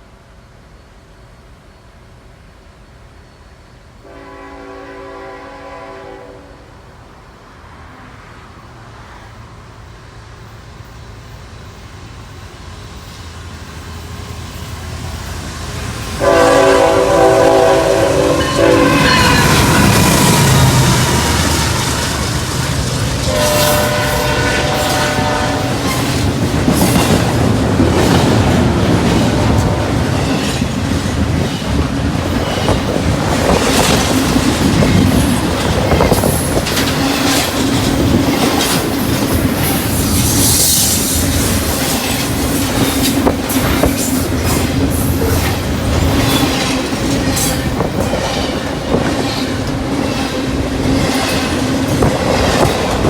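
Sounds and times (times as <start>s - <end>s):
locomotive air horn: 4.0s - 6.7s, 16.2s - 22.3s, 23.2s - 26.2s
train wheels clacking on rail joints: 13.0s - 53.0s
high wheel squeal: 17.8s - 27.1s.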